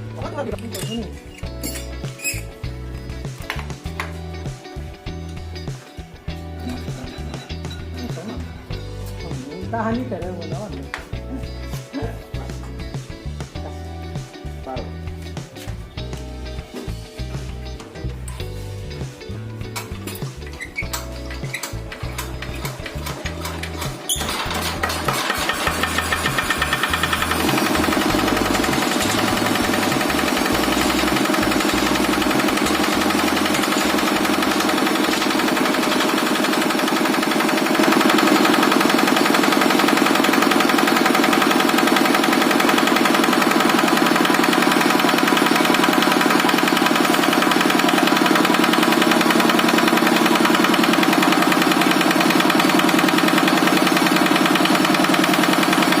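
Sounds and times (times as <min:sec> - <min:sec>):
diesel engine knocking: 0:24.2 - 0:56.0.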